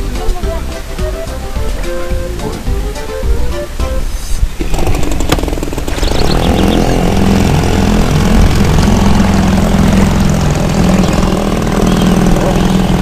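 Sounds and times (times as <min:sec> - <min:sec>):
engine starting and running: 0:04.5 - 0:13.0.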